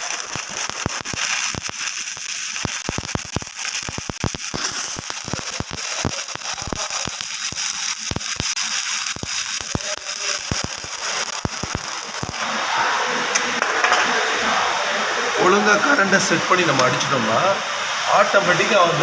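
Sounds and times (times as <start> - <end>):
welding arc crackling and hissing: 0.0 - 19.0.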